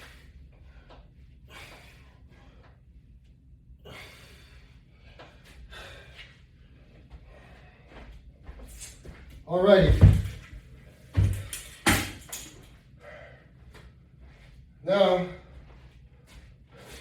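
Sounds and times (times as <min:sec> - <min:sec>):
man breathing hard: 0:00.0 - 0:02.9, 0:03.8 - 0:09.1, 0:12.9 - 0:14.4, 0:16.3 - 0:17.0.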